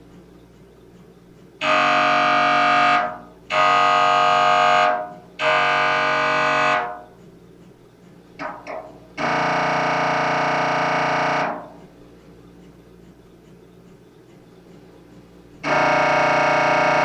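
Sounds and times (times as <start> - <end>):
mri scanner buzzing tones: 1.2 - 17.0.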